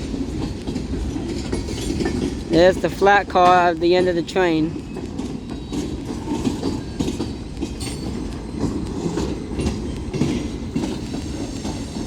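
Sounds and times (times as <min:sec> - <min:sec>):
train wheels clacking on rails: 0:00.0 - 0:12.0.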